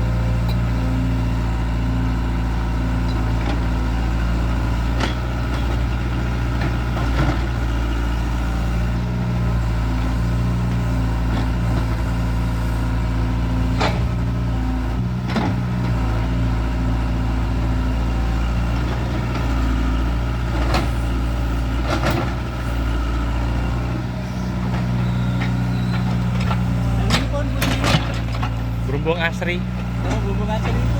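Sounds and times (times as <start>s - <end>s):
excavator diesel engine running: 0.0s - 30.9s.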